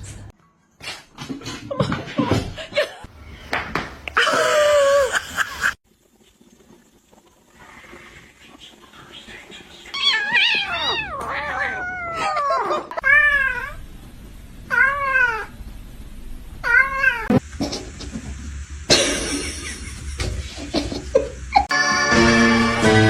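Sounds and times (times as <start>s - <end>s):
cat meowing: 9.9s - 13.8s.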